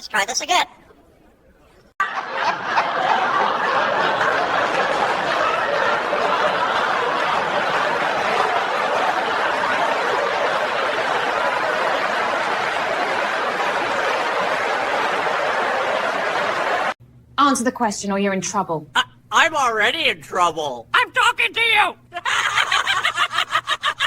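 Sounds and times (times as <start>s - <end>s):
crowd laughing: 2.0s - 17.0s, 22.1s - 24.0s.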